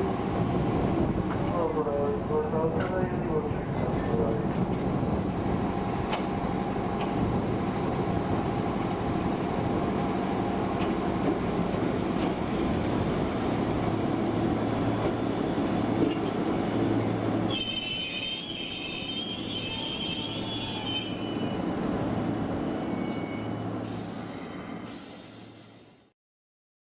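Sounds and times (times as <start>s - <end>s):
train rumbling over rails: 0.0s - 26.1s
wheel and brake squeal: 17.5s - 21.7s, 22.8s - 25.0s.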